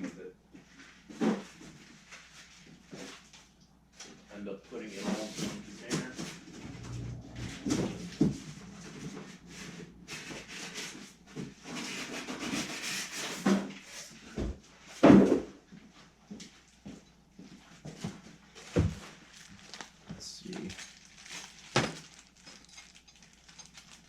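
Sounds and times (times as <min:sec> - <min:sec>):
packaging rustling: 0:19.1 - 0:24.0.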